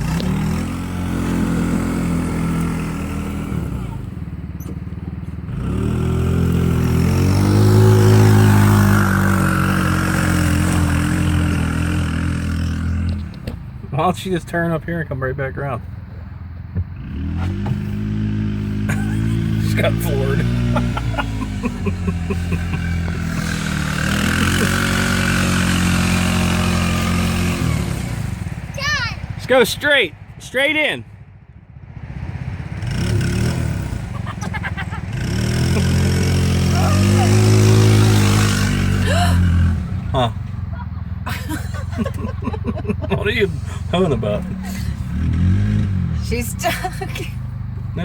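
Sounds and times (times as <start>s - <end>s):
small engine revving: 0.0s - 13.4s, 17.0s - 29.9s, 31.9s - 48.0s
small gasoline engine running: 18.9s - 28.5s, 34.5s - 40.8s.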